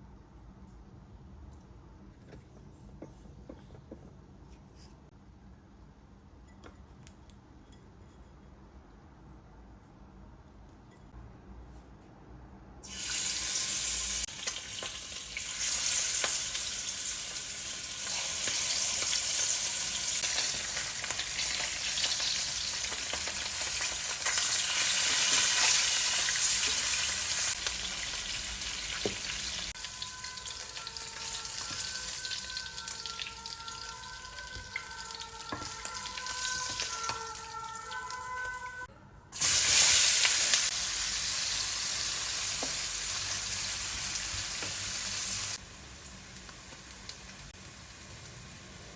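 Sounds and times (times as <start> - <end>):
food sizzling in hot oil: 12.8 - 37.1, 39.4 - 48.9.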